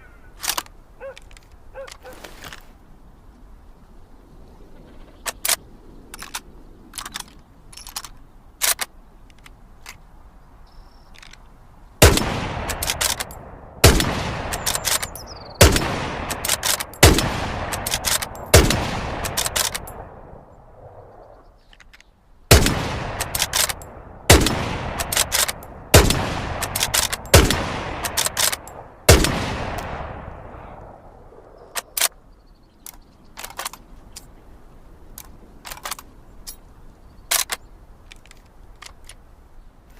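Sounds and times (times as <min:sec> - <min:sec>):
metallic rifle bolt clicks: 0:00.4 - 0:02.1, 0:05.2 - 0:10.0, 0:11.1 - 0:20.0, 0:21.6 - 0:30.0, 0:31.8 - 0:32.2, 0:32.8 - 0:34.3, 0:35.1 - 0:36.6, 0:37.3 - 0:39.2
rifle shots ringing out: 0:12.0 - 0:20.3, 0:22.5 - 0:31.0.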